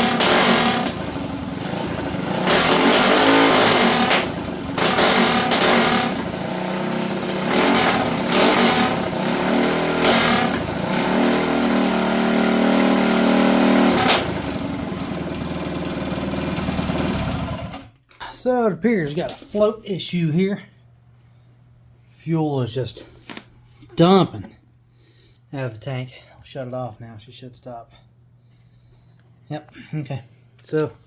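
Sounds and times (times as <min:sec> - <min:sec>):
minibike engine revving: 0:00.0 - 0:17.9.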